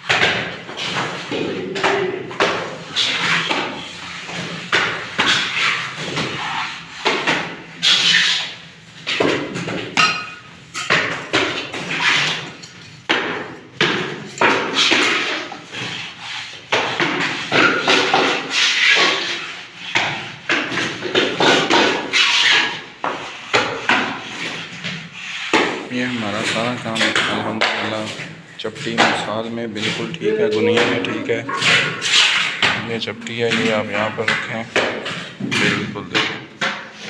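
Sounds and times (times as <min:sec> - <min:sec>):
tools scraping on plaster: 0:00.0 - 0:37.0.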